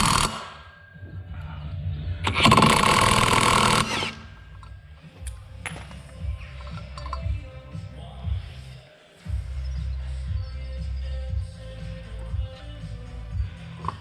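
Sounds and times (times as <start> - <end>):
power tool burst: 0.0 - 0.6, 2.4 - 4.2
metallic clicks of tools: 6.6 - 7.3.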